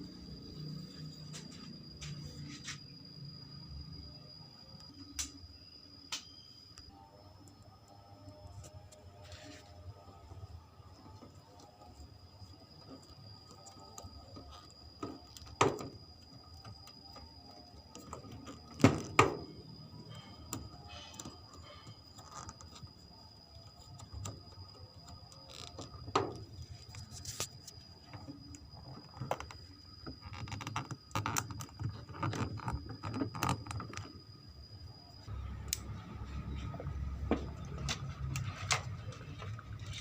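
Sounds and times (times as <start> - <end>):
faint high whine: 0.0 - 40.0.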